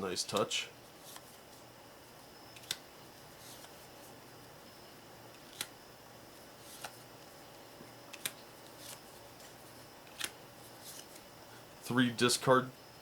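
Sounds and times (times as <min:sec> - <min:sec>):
faint steady hum: 0:00.0 - 0:13.0
playing cards snapping: 0:02.6 - 0:02.8, 0:05.4 - 0:05.8, 0:08.1 - 0:09.0, 0:10.1 - 0:11.2.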